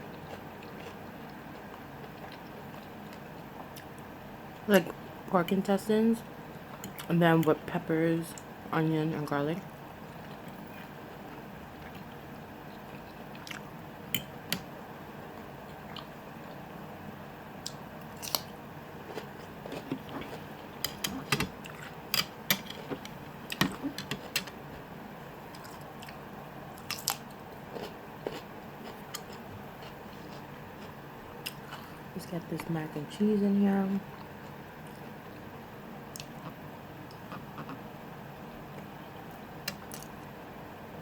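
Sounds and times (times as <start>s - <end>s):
chewing and biting food: 0.0s - 3.9s, 18.1s - 20.9s, 26.8s - 32.0s.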